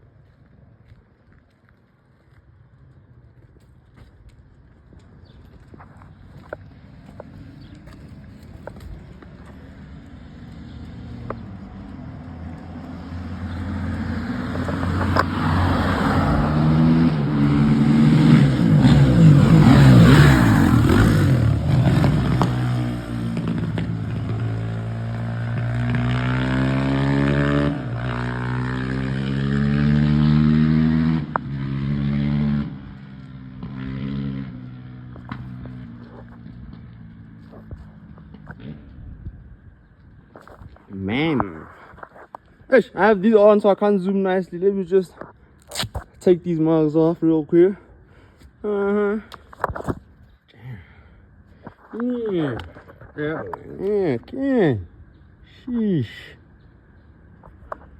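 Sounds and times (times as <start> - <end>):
dirt bike engine revving: 10.3 - 39.0.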